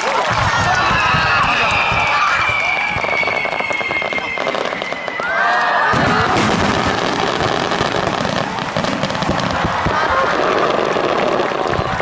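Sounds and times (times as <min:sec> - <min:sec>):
fireworks crackling: 0:00.0 - 0:12.0
fireworks booming: 0:00.3 - 0:05.2, 0:05.9 - 0:12.0
firework whistle falling in pitch: 0:00.8 - 0:07.0.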